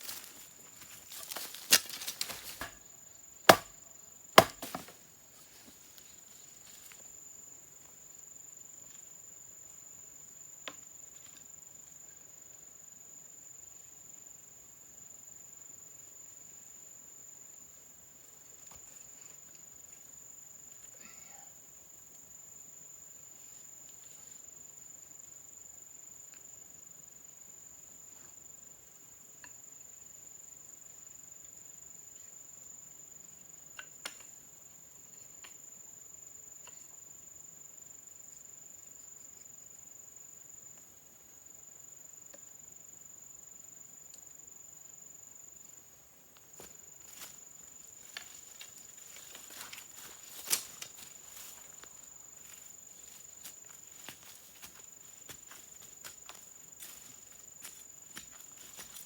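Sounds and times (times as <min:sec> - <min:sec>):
insects chirring: 0:00.0 - 0:59.0
sharp knocks: 0:03.5 - 0:03.7, 0:04.4 - 0:04.9.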